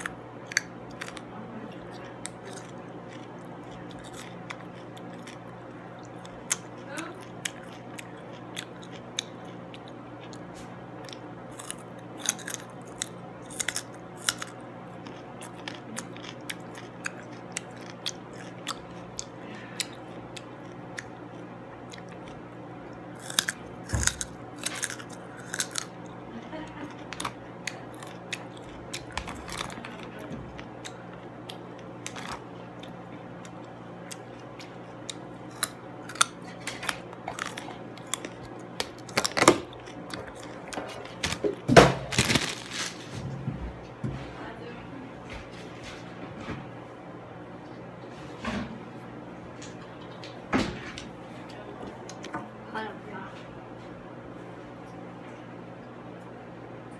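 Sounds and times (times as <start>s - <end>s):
chewing crunchy food: 0.0s - 43.2s.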